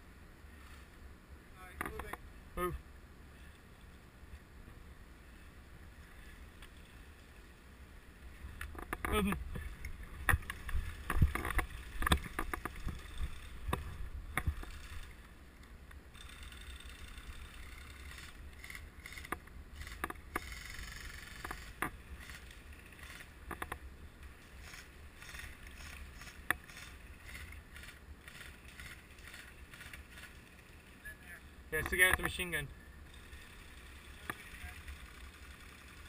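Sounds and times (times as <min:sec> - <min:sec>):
rustle of movement: 0:00.3 - 0:36.0
low wind rumble on microphone: 0:08.1 - 0:15.2.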